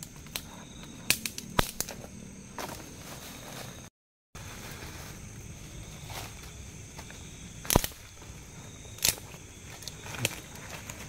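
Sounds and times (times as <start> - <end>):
firewood sticks snapping: 0.0 - 2.0, 7.6 - 11.0.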